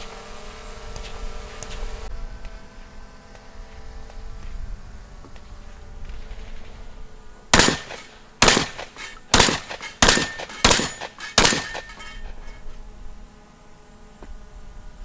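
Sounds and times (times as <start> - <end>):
gunshots with ringing tail: 7.6 - 12.6.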